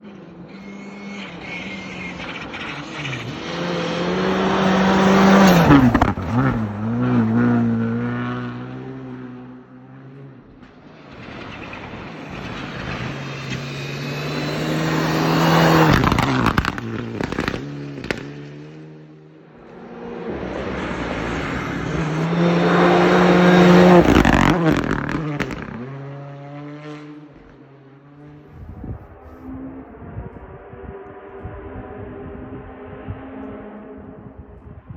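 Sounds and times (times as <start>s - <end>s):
rally car engines passing: 0.0s - 34.9s
exhaust pops and bangs: 15.7s - 18.4s, 23.6s - 26.0s.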